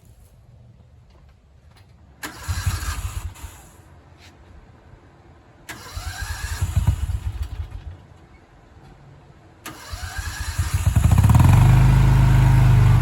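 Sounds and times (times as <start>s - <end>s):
vehicle engine cranking and starting: 2.2s - 3.8s, 5.6s - 8.2s, 9.6s - 13.0s.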